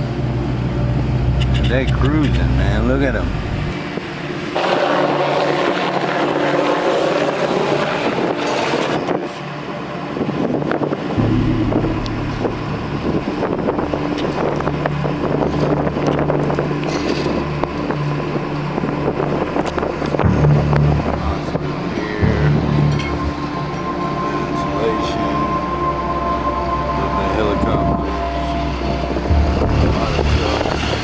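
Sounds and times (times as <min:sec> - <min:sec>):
vehicle running in motion: 0:00.0 - 0:09.7, 0:11.2 - 0:31.0
wind buffeting microphone: 0:03.1 - 0:31.0
deep low hum: 0:11.2 - 0:31.0.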